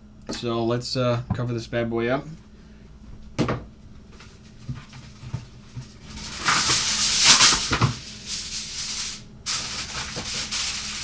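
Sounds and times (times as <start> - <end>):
aluminium foil crinkling: 5.8 - 11.0.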